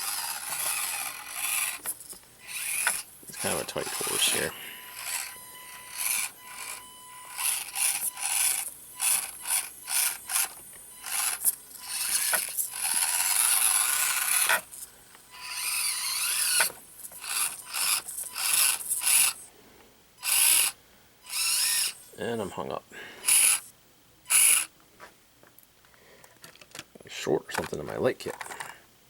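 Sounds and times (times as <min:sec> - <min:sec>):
toy car motor whining: 0:00.0 - 0:19.5, 0:20.2 - 0:22.2, 0:23.2 - 0:24.7.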